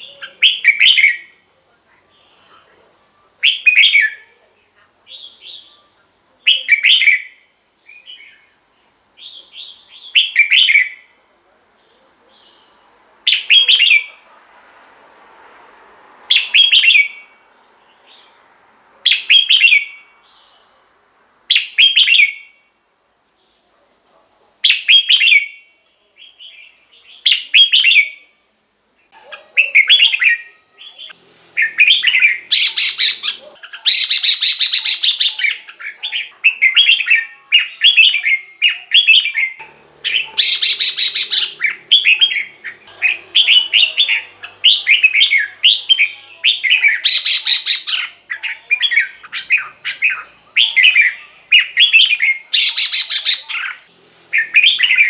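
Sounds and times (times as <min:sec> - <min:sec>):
bird singing whistled phrases: 0:00.0 - 0:01.4, 0:03.4 - 0:04.2, 0:06.4 - 0:08.5, 0:09.2 - 0:11.1, 0:13.3 - 0:14.1, 0:16.3 - 0:17.4, 0:19.1 - 0:20.0, 0:21.5 - 0:22.6, 0:24.6 - 0:28.3, 0:29.5 - 0:55.0.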